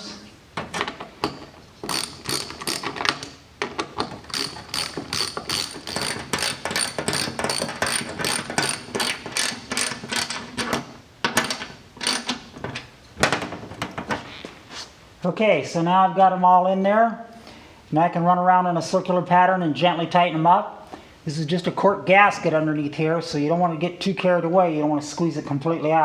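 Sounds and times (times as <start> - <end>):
hand ratchet clicking: 1.8 - 3.4, 4.0 - 10.7, 11.4 - 12.4.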